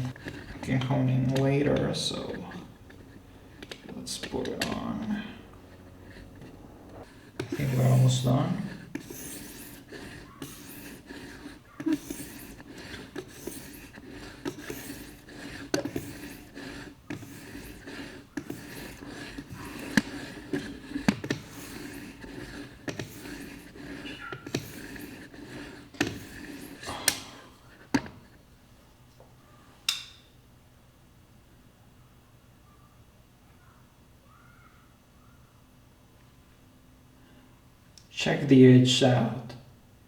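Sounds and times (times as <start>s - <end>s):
whetstone scraping knife edge: 0.0s - 4.8s, 5.5s - 27.2s.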